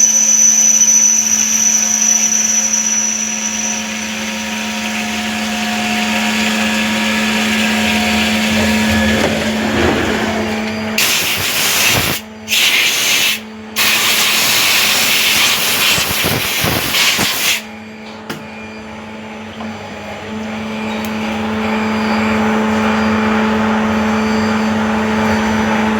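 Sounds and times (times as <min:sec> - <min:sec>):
machine humming: 0:00.0 - 0:12.5
loud hissing spray: 0:11.0 - 0:17.6.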